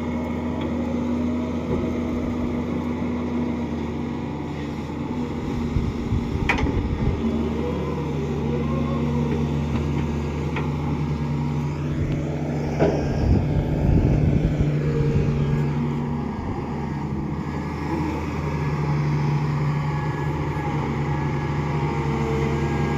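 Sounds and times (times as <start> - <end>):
diesel engine running: 0.0 - 22.9
loud clank and rumble: 5.8 - 7.2, 12.0 - 14.7.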